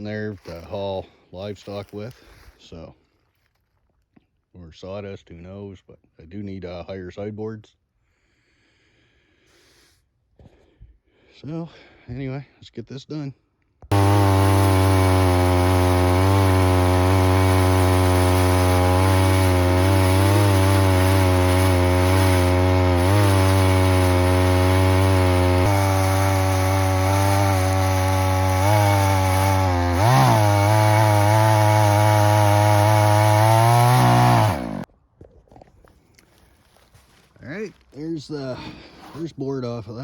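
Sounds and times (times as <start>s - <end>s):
sawmill engine cutting log: 13.9s - 34.9s.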